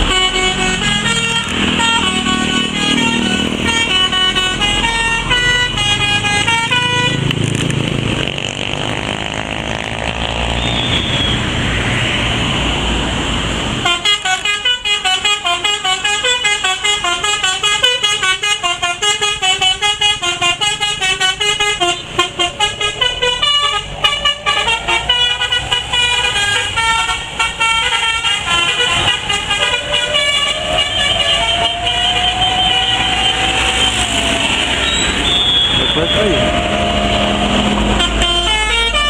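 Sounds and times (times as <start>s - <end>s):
noisy rumble: 0.0s - 4.8s, 21.8s - 39.0s
bus musical horn melody: 0.0s - 7.5s, 13.8s - 39.0s.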